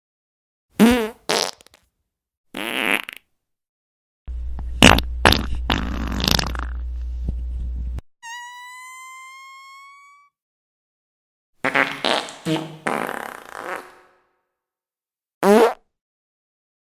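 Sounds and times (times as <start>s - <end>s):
fart sound effects: 0.8s - 1.8s, 2.6s - 3.2s, 4.8s - 6.8s, 11.6s - 14.2s, 15.4s - 15.8s.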